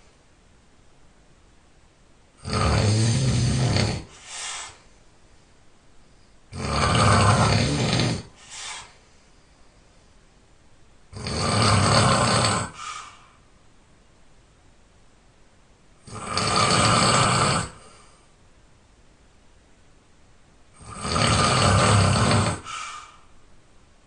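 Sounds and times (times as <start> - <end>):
person snoring loudly: 2.4 - 4.3, 6.5 - 8.9, 11.1 - 13.1, 16.0 - 18.0, 20.8 - 23.1
soft breath: 4.0 - 6.5, 8.2 - 10.4, 12.6 - 13.6, 17.7 - 18.4, 22.2 - 23.4.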